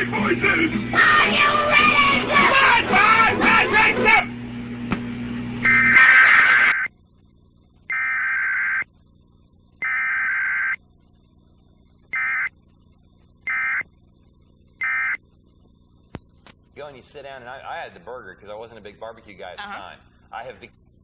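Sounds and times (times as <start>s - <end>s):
faint hum: 0.0s - 21.0s
screechy digital data bursts: 5.6s - 6.9s.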